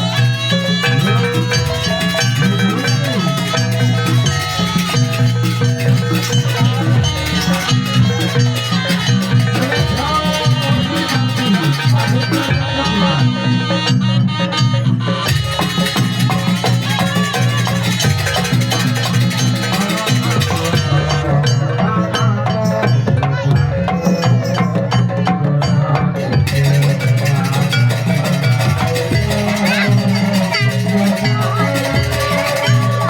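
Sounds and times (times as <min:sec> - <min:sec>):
live ensemble music: 0:00.0 - 0:22.0, 0:24.8 - 0:33.0
drums and percussion: 0:00.0 - 0:33.0
held pitched tones: 0:26.5 - 0:33.0.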